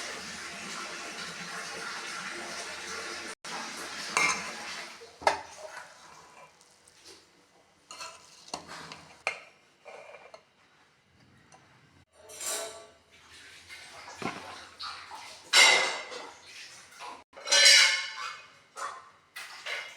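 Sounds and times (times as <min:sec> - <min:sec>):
metal spoon scraping a pot: 0:07.9 - 0:10.5, 0:17.4 - 0:18.5.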